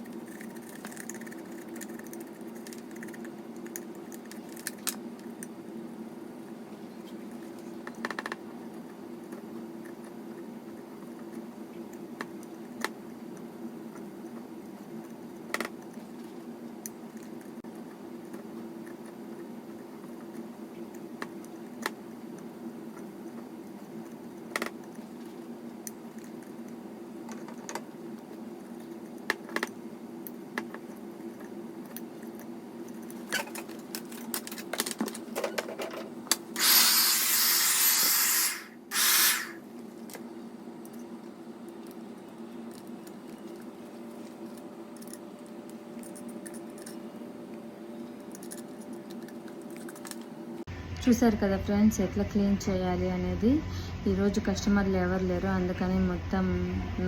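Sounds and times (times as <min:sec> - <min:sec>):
steady low hum: 0:00.0 - 0:57.0
hair dryer blowing: 0:36.6 - 0:39.6.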